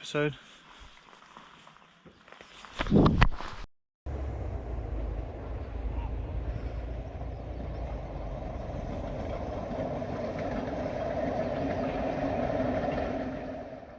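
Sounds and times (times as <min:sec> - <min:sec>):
vehicle engine running: 0:04.1 - 0:13.9.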